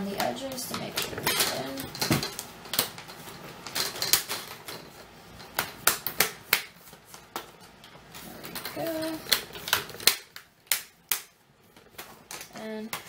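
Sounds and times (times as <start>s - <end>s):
plastic clips snapping: 8.5s - 11.4s.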